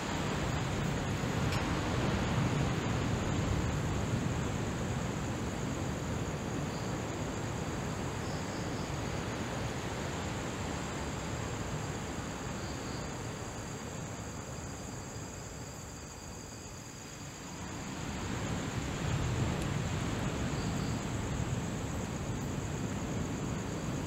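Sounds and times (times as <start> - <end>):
crickets chirring: 0.0 - 24.0.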